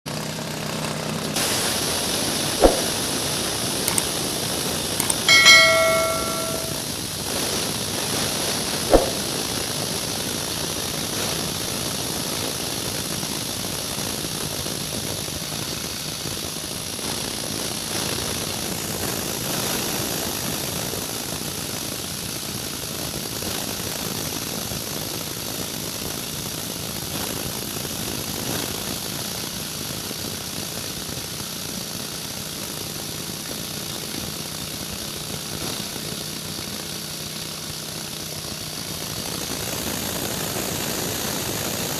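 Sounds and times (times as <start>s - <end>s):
sharp click: 2.6s - 3.0s, 5.0s - 6.8s, 8.9s - 9.2s.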